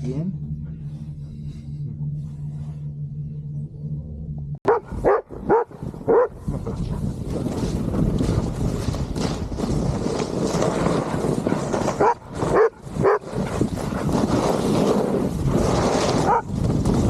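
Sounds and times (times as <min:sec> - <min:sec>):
dog barking: 0:04.7 - 0:07.1, 0:12.0 - 0:13.2, 0:16.2 - 0:16.5
snowboard scraping over snow: 0:04.9 - 0:17.0.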